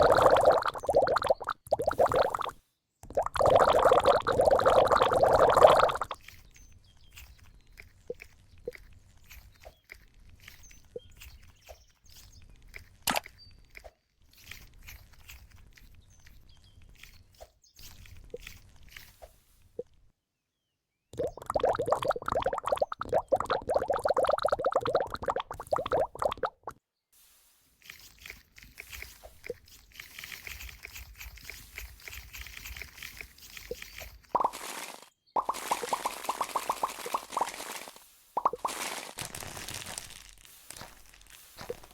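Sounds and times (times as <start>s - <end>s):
foam toy crackling and squelching: 0.0s - 19.8s, 27.2s - 41.9s
foam toy crackling when squeezed: 34.3s - 41.9s.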